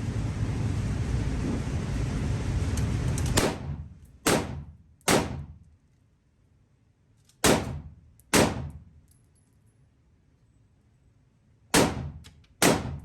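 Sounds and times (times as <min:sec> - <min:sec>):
rifle shots echoing: 0:03.4 - 0:05.6, 0:07.4 - 0:08.8, 0:11.7 - 0:13.0.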